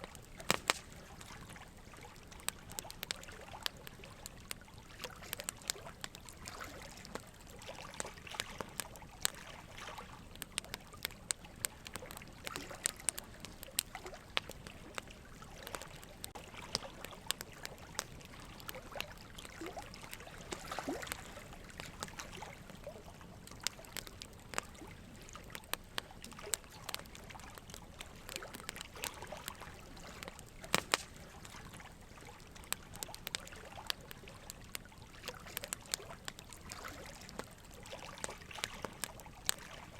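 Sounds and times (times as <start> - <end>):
small clicks: 0.0 - 0.9, 2.3 - 7.3, 23.5 - 31.7, 32.6 - 39.8
small water splashes: 0.0 - 39.9
water trickling and lapping: 0.0 - 39.9.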